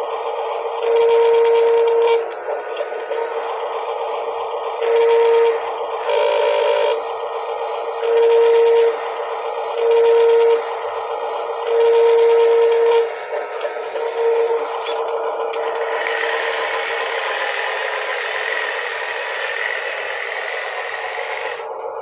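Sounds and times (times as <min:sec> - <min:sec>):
continuous whir: 0:00.0 - 0:22.0
mechanical whir: 0:00.0 - 0:22.0
toy truck electronic horn honking: 0:00.8 - 0:02.4, 0:04.7 - 0:07.0, 0:08.0 - 0:09.0, 0:09.7 - 0:10.8, 0:11.5 - 0:21.7.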